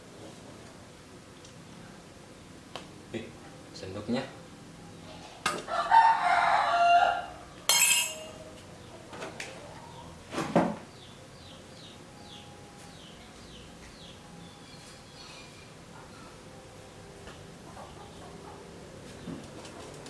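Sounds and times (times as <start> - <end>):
metal spoon clinking on crockery: 7.7 - 8.4.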